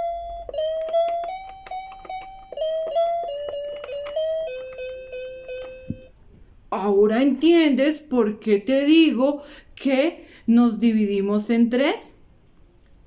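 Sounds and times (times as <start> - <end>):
piano melody: 0.0 - 6.2.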